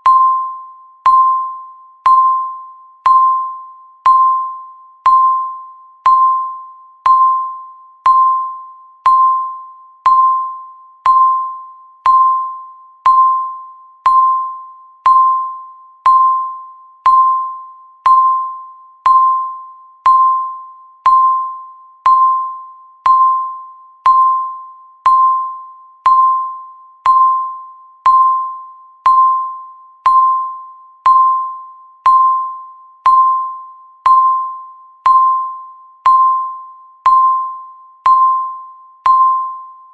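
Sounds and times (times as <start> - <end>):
electronic timer beeping: 0.0 - 39.9.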